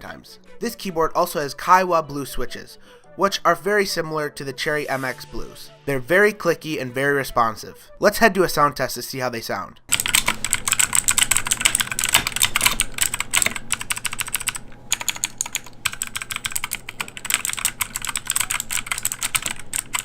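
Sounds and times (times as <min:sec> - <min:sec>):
clicky keyboard typing: 0:09.9 - 0:20.0.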